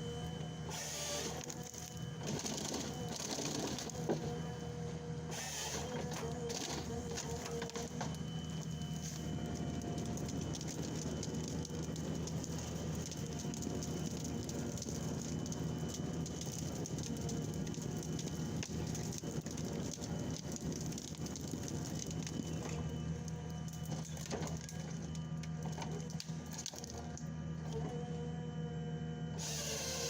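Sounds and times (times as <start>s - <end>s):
crackling and snapping: 6.0s - 27.3s.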